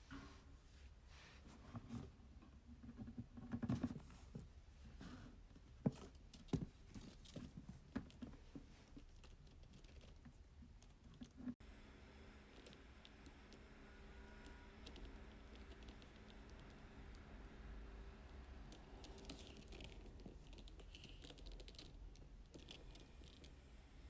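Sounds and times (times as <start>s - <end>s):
soft rustling: 0.0s - 11.6s.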